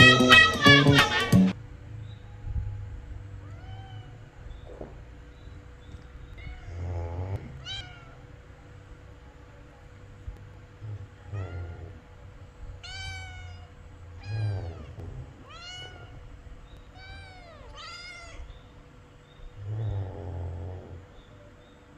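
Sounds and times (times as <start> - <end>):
cat meowing: 0.0 - 1.4, 3.4 - 4.6, 6.3 - 8.3, 10.9 - 18.8.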